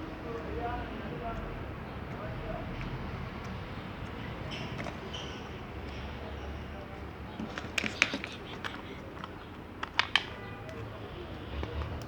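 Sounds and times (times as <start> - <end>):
sharp pops and clicks: 7.4 - 10.4.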